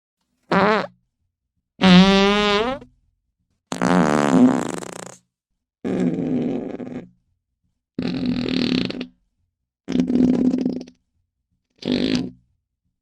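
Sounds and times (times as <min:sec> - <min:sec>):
fart sound effects: 0:00.5 - 0:00.9, 0:01.8 - 0:02.8, 0:03.7 - 0:05.2.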